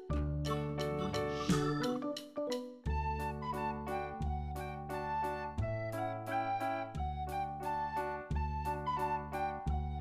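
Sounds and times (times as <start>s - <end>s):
instrumental background music: 0.0s - 10.0s.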